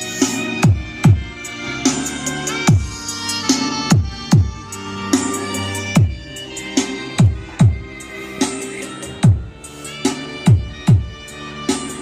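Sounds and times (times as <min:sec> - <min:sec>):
electronic dance music: 0:00.0 - 0:12.0
sustained synth backing: 0:00.0 - 0:12.0
deep kick drums: 0:02.7 - 0:03.0, 0:03.9 - 0:04.7, 0:07.2 - 0:07.9, 0:09.2 - 0:09.6, 0:10.5 - 0:11.2.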